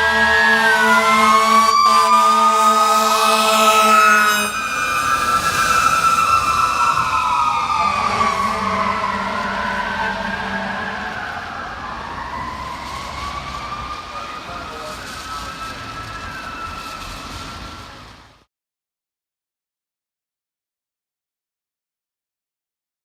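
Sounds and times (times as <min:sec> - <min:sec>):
air horn blasting: 0:00.0 - 0:11.6.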